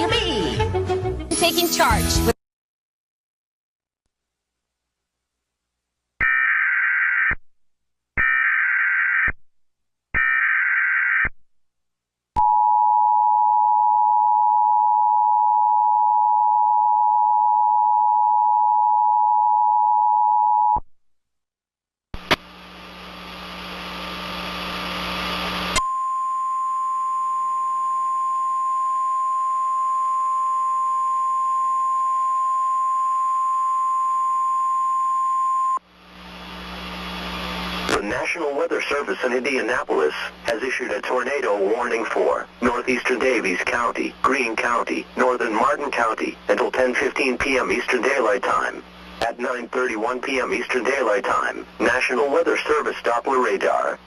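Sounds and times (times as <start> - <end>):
screeching digital header bursts: 8.2 - 9.3, 10.2 - 11.3
radio hiss: 36.3 - 54.0.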